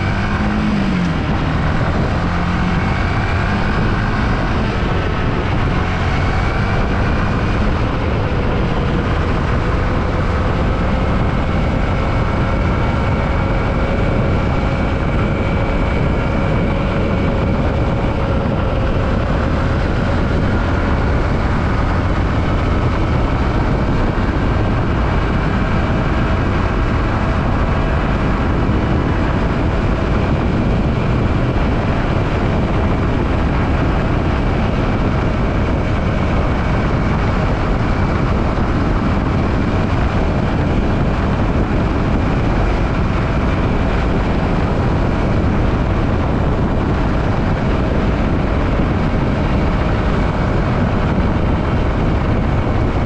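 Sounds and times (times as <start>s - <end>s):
motorcycle engine running: 0.0s - 53.0s
wind rush on microphone: 0.0s - 53.0s.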